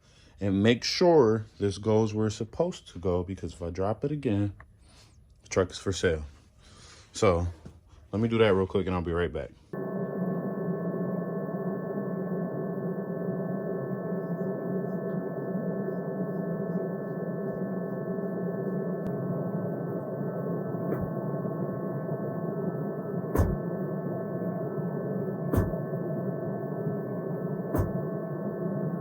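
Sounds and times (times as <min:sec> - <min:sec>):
drone of held tones: 0:09.7 - 0:29.0
low thumps: 0:14.3 - 0:24.6, 0:25.4 - 0:26.1, 0:27.6 - 0:28.2.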